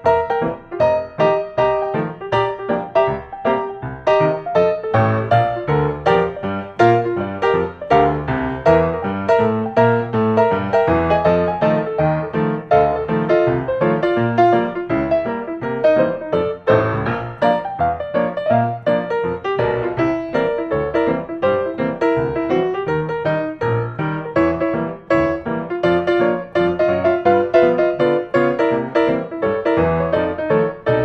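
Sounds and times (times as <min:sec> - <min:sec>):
bright quick piano tune: 0:00.0 - 0:31.0
bass line: 0:01.7 - 0:31.0.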